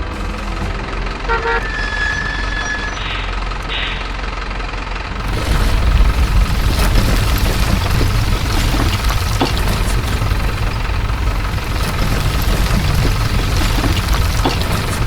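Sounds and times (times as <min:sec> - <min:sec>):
model machines running: 0:03.1 - 0:15.0.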